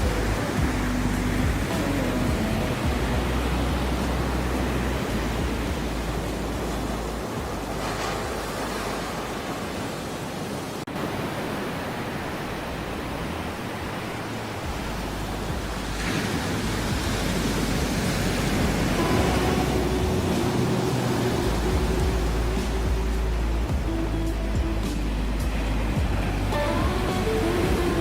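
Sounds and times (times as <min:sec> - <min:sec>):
breaking waves: 0:00.0 - 0:28.0
steady held tones: 0:16.6 - 0:28.0.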